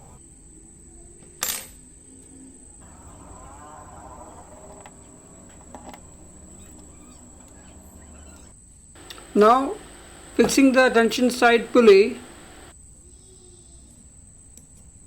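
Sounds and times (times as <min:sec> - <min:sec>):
faint background noise: 0:00.0 - 0:15.0
steady high-pitched whine: 0:02.8 - 0:12.7.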